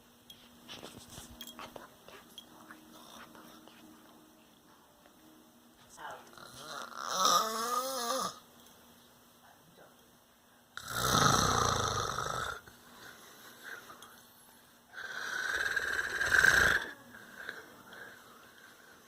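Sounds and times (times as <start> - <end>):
man snoring: 6.4 - 8.4, 10.8 - 12.7, 14.9 - 18.1.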